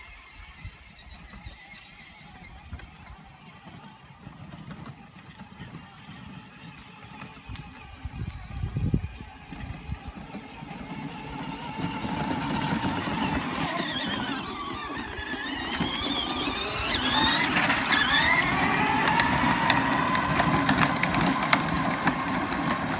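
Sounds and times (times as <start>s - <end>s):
toy car electric motor whining: 0.0s - 22.9s
wheels rumbling: 0.0s - 22.9s.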